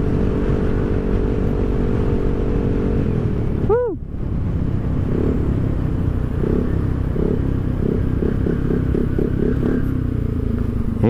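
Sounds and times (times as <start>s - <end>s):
scooter engine running: 0.0s - 11.0s.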